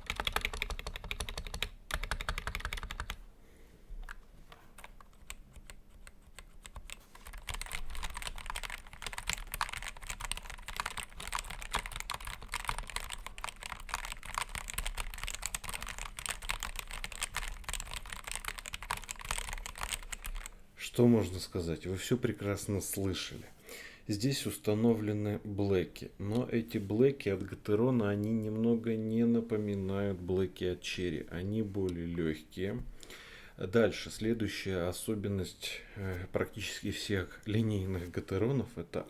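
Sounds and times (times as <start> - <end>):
typing on mechanical keyboard: 0.0 - 3.2, 4.8 - 20.5.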